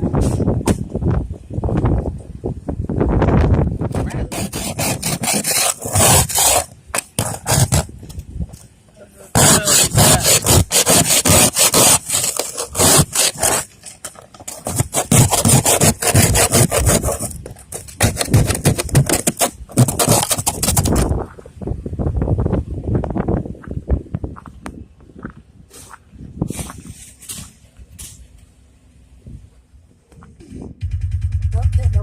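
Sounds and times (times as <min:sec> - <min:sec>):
ice scraper scraping windows: 0:04.0 - 0:07.9, 0:09.3 - 0:21.1.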